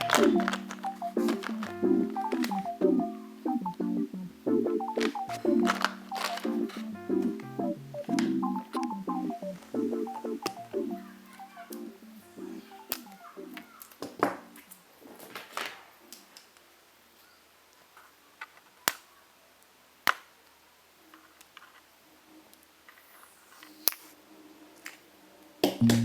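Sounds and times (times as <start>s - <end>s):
sharp clicks and taps: 0.0s - 2.8s, 4.7s - 11.9s.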